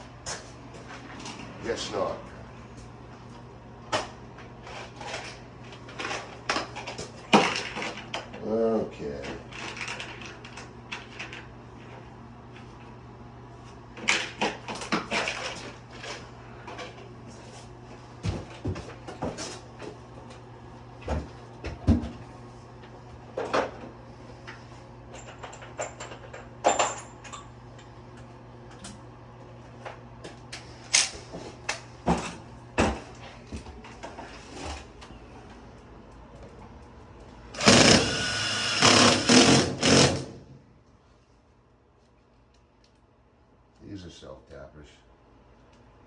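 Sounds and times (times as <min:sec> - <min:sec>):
power drill driving screws: 0:37.6 - 0:40.4.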